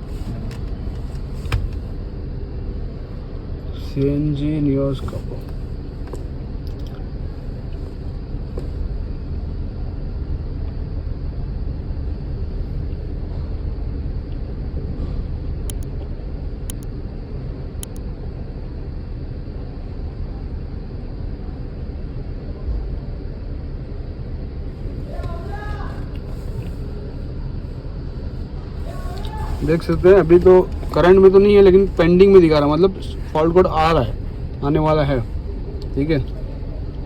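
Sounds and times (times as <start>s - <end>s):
car engine idling: 0.0s - 9.2s, 24.6s - 37.0s.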